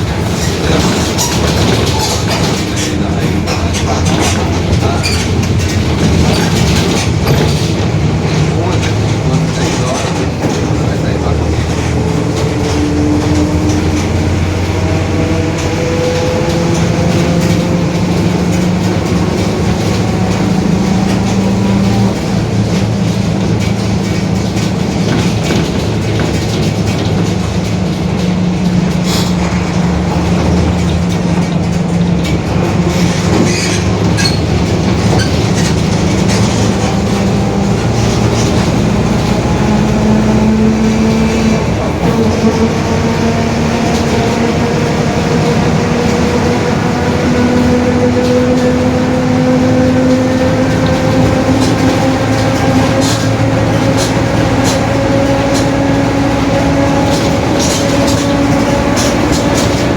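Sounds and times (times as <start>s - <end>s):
bus diesel engine running: 0.0s - 59.9s.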